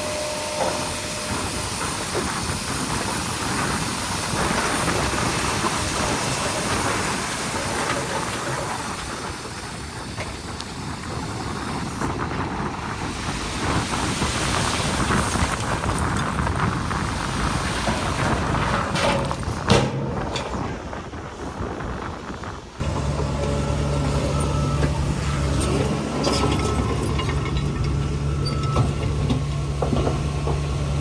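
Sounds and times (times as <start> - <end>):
heavy machinery engine running: 0.0 - 31.0
rattling and clanking: 15.2 - 21.2, 22.8 - 31.0.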